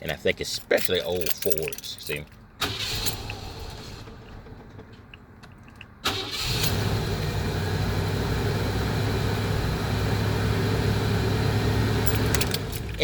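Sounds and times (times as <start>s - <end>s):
van engine starting and idling: 2.6s - 5.3s, 6.0s - 13.0s.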